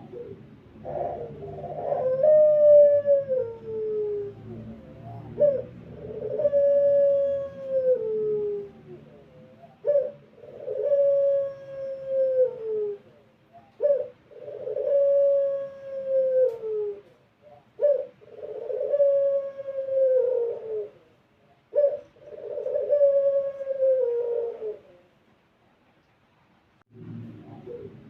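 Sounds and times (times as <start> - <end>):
dove cooing: 0.0 - 25.2, 27.2 - 28.0.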